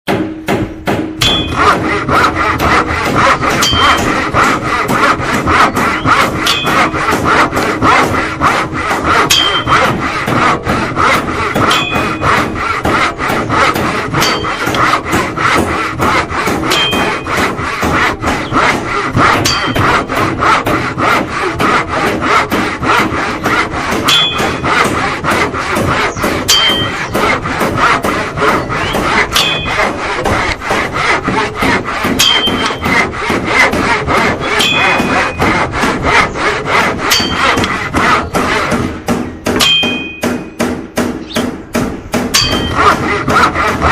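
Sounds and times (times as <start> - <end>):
handsaw cutting wood: 0.1 - 43.9
short metallic ding: 1.2 - 1.6, 39.6 - 40.6.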